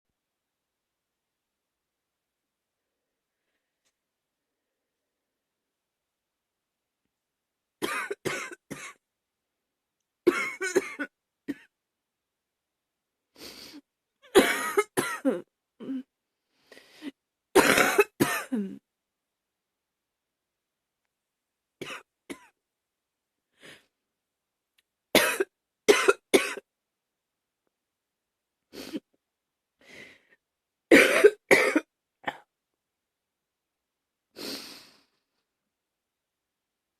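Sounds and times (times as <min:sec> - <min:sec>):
woman coughing: 0:07.8 - 0:09.0, 0:10.3 - 0:11.7, 0:14.3 - 0:16.1, 0:17.6 - 0:18.8, 0:25.2 - 0:26.6, 0:30.9 - 0:32.5.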